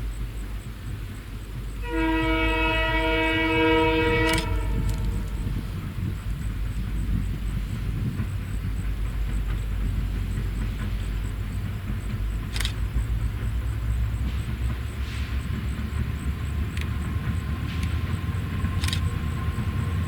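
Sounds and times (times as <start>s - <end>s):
diesel train rumbling past: 0.0s - 20.0s
sharp clicks: 4.0s - 5.6s, 10.3s - 19.8s.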